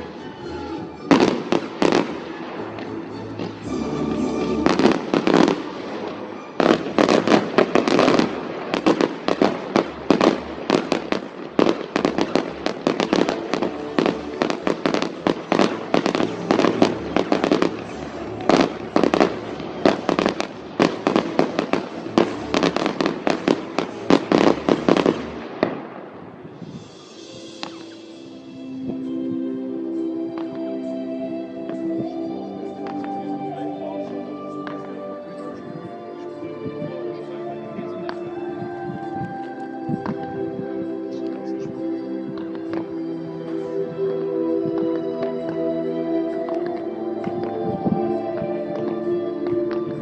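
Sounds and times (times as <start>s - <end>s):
fireworks bangs and crackles: 0.9s - 28.2s, 37.8s - 41.8s.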